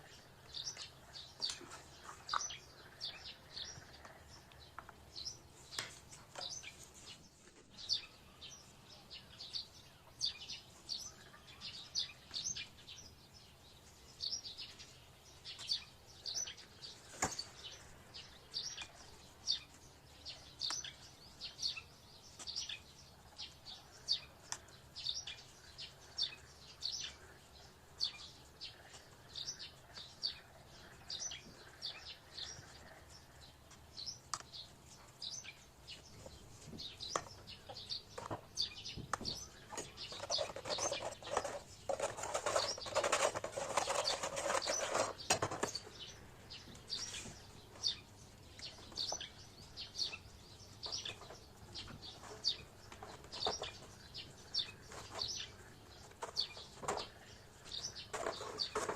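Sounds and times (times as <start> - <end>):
small bird chirping: 0.0 - 58.9
noisy rustling: 12.4 - 58.9.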